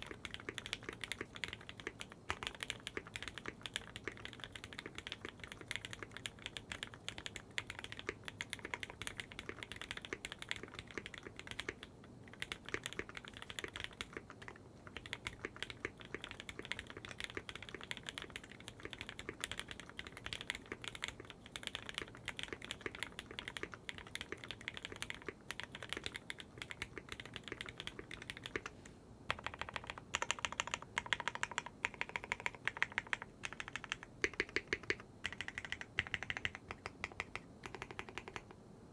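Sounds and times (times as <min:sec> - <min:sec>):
mechanical keyboard keystroke clacks: 0:29.3 - 0:38.5.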